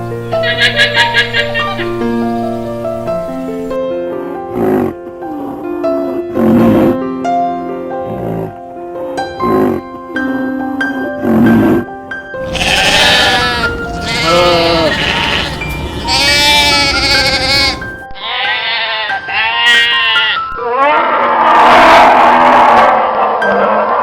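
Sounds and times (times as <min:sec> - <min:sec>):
background music: 0:00.0 - 0:20.7
farm animal bleating: 0:12.4 - 0:21.2.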